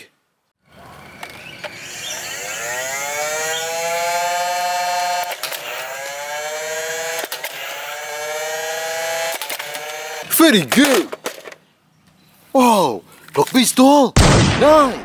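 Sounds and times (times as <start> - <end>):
toy blaster motor whirring: 1.2 - 11.4.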